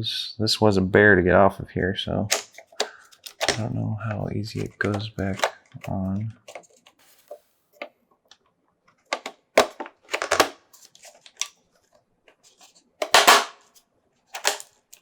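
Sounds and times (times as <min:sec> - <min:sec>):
loud plastic snap: 0:02.3 - 0:03.6, 0:13.0 - 0:13.6, 0:14.4 - 0:14.7
plastic clicks and knocks: 0:02.3 - 0:03.7, 0:04.6 - 0:06.8, 0:09.0 - 0:10.6, 0:14.4 - 0:15.0.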